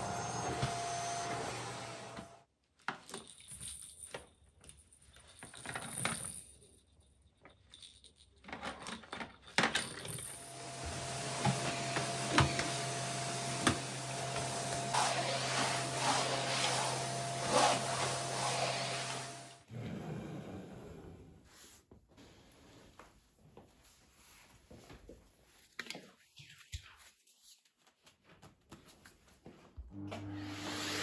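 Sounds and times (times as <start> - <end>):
appliance hum: 10.4 - 19.6, 29.9 - 31.0.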